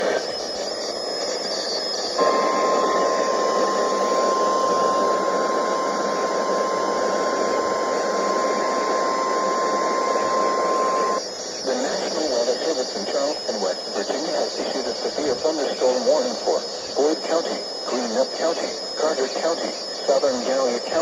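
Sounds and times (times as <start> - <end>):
high steady alarm tone: 0.0 - 21.0
radio static: 0.0 - 21.0.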